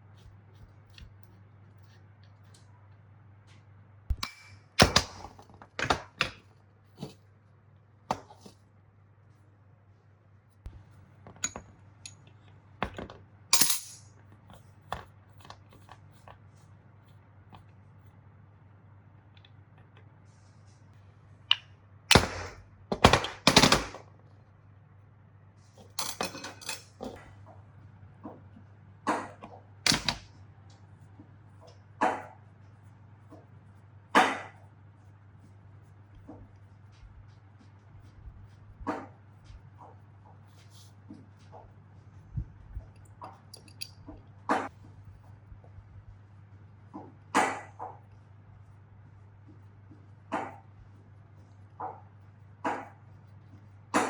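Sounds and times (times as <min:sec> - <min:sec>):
tools knocking and scraping: 0:11.2 - 0:14.1
metal parts clinking: 0:13.6 - 0:14.1.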